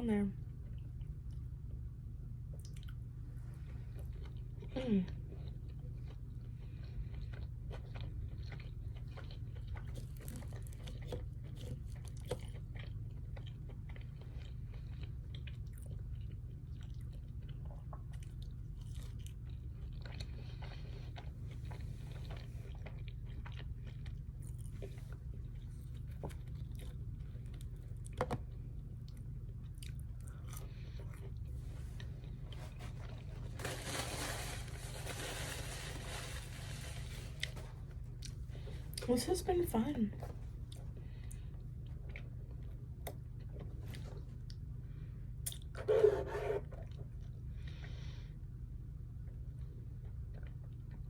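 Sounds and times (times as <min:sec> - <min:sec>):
steady low hum: 0:00.0 - 0:51.0
chewing and crunching food: 0:00.2 - 0:51.0.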